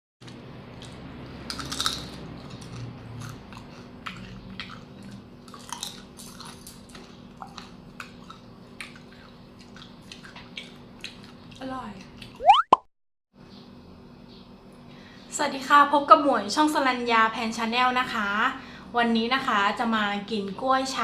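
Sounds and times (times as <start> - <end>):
crunchy chips being chewed: 0.2 - 12.4.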